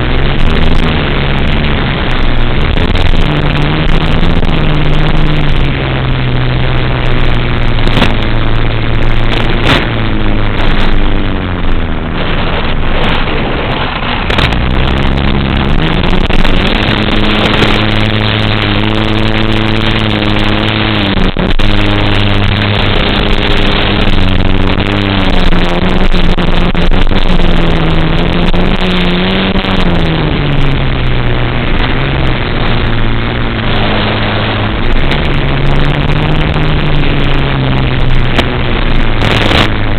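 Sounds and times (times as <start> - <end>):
rushing air noise: 0.0 - 39.9.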